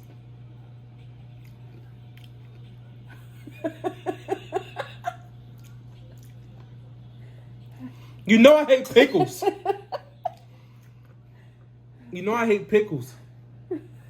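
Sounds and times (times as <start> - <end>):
steady low hum: 0.0 - 14.0
person laughing: 3.4 - 5.3, 9.0 - 10.4.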